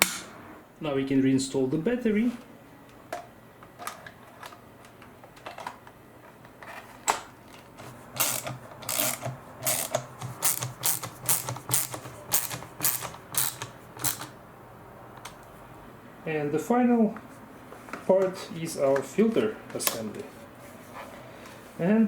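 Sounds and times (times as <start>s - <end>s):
ratcheting screwdriver clicking: 8.2s - 14.3s.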